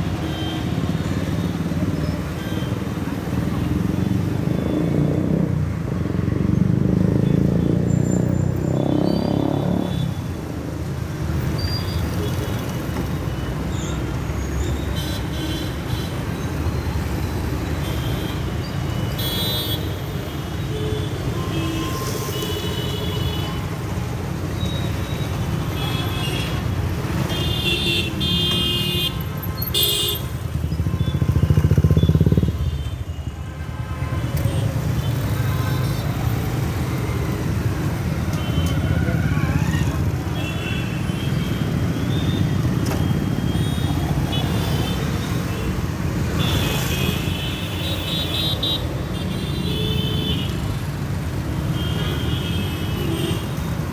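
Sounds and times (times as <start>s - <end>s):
rumble of motorcycles and cars: 0.0s - 53.9s
loud vehicle passing: 3.7s - 10.1s.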